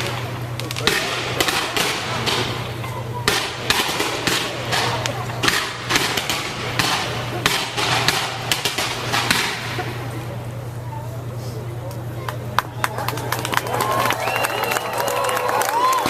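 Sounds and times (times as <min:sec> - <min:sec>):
fireworks bursting: 0:00.0 - 0:12.1
low steady hum: 0:00.0 - 0:16.0.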